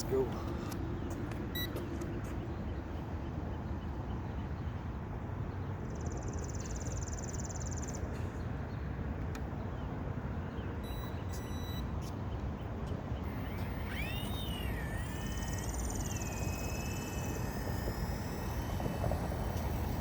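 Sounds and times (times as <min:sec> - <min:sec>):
high buzz: 0:10.8 - 0:11.9, 0:13.2 - 0:20.0.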